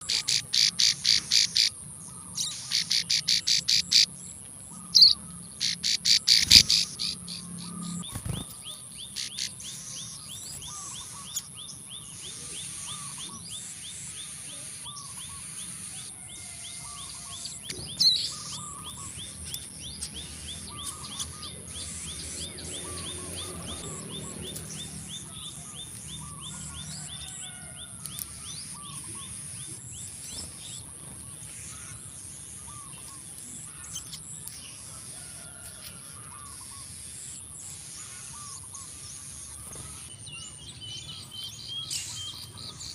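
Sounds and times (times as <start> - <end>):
bird ticking and chirps: 0.0 - 42.9
birds calling: 0.0 - 42.9.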